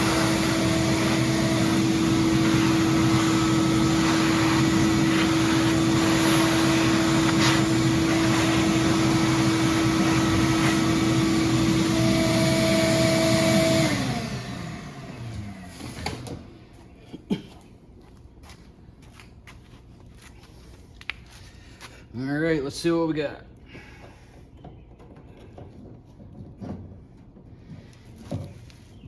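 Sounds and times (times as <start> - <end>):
vacuum cleaner whining: 0.0 - 16.8.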